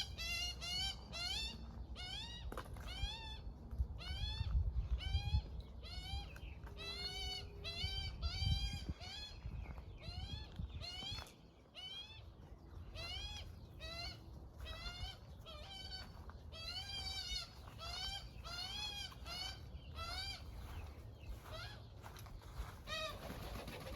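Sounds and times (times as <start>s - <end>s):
bird squeaky begging calls: 0.0s - 9.4s, 12.9s - 20.8s.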